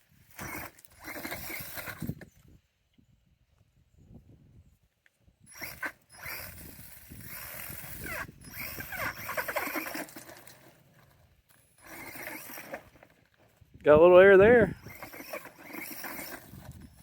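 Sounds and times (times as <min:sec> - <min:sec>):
electric motor whine: 0:00.2 - 0:02.3, 0:05.5 - 0:13.2, 0:14.4 - 0:17.0
rattling mechanical clatter: 0:05.5 - 0:13.6, 0:14.8 - 0:17.0.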